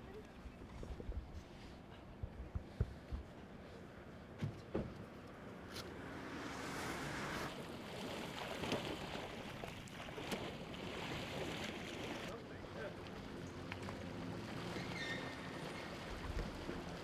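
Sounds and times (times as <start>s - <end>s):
paddles splashing water: 5.2s - 17.0s.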